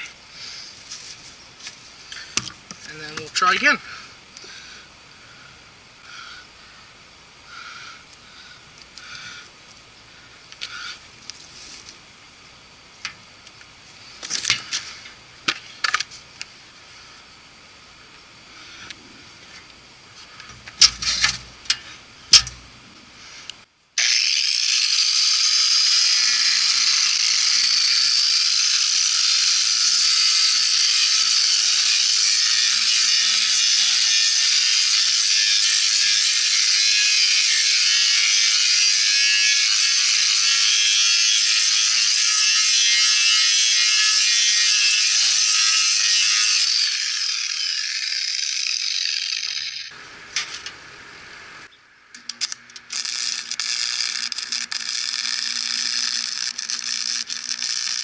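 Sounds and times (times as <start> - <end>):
welder arc crackling and sizzling: 52.2 - 58.0.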